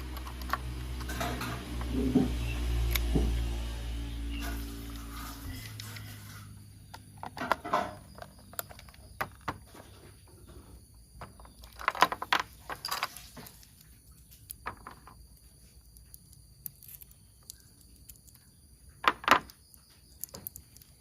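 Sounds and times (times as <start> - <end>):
plastic toy parts clicking: 15.9 - 18.4.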